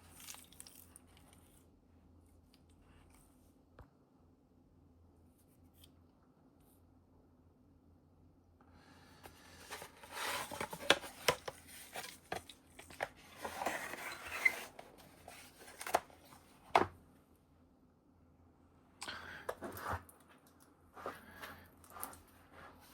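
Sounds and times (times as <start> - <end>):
wooden box rustling and scraping: 9.5 - 16.9.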